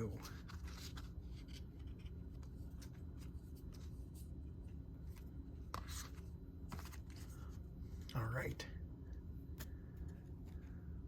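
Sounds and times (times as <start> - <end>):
trading cards rustling: 0.0 - 8.1
low steady hum: 0.0 - 11.0.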